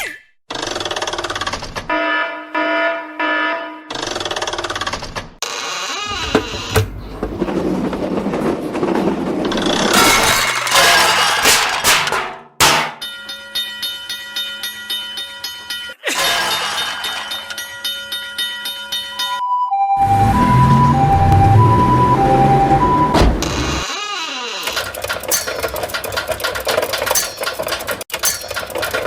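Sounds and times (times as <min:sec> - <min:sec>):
train rumbling past: 0:06.8 - 0:09.9
railroad crossing warning bell: 0:17.2 - 0:23.1.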